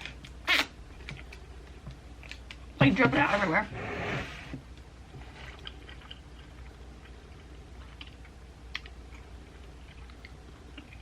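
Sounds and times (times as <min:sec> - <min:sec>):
steady low hum: 0:00.0 - 0:11.0
chewing with wet mouth clicks: 0:05.6 - 0:11.0.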